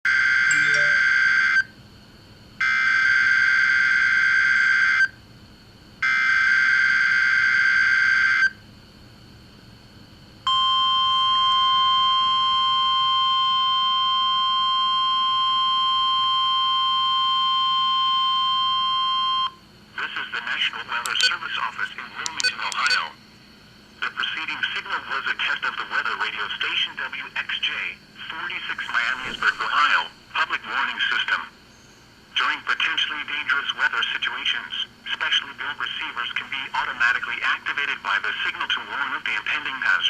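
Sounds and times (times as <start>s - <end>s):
steady warning alarm tone: 10.5s - 19.6s.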